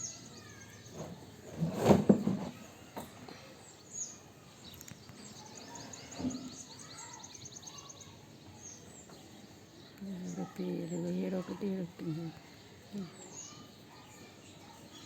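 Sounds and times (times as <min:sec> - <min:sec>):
birds chirping: 0:00.0 - 0:15.0
faint clicks: 0:04.6 - 0:05.2.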